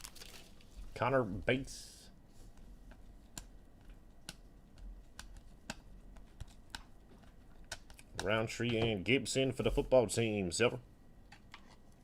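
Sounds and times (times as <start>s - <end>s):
trading cards clicking and tapping: 2.6s - 9.0s.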